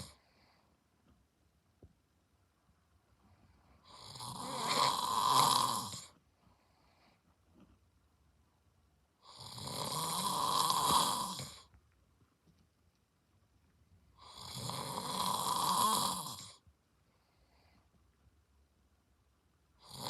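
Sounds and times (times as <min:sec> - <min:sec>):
man snoring: 0:00.0 - 0:00.2, 0:03.8 - 0:06.2, 0:09.2 - 0:11.7, 0:14.2 - 0:16.6, 0:19.8 - 0:20.0.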